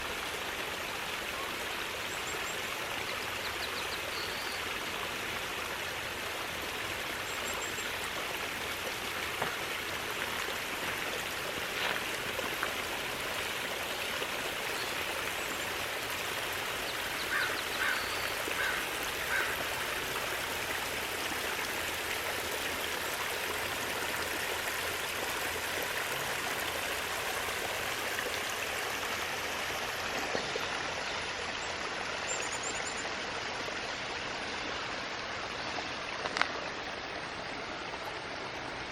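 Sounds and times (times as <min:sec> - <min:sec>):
water rushing and splashing: 0:00.0 - 0:38.9
bird calls: 0:16.9 - 0:19.6.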